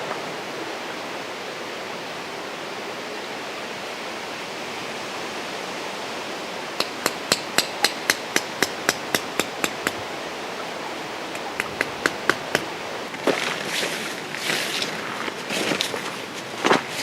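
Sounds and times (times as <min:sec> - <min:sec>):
steady rushing noise: 0:05.1 - 0:17.0
hammer blows ringing: 0:06.8 - 0:10.0.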